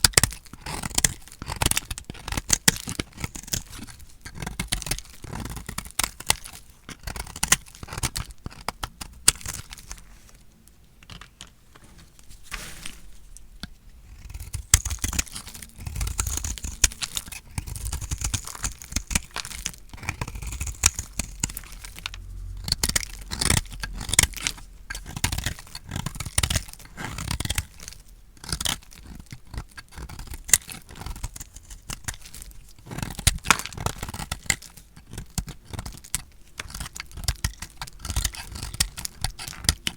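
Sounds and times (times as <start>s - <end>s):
blade crunching through dry soap: 0.0s - 39.9s.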